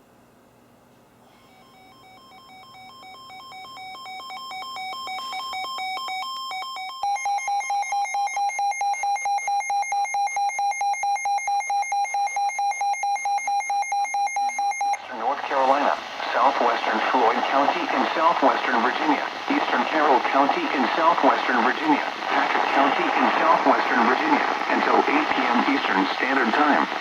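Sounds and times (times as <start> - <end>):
rapid single-pitch beeping: 1.5 - 15.0.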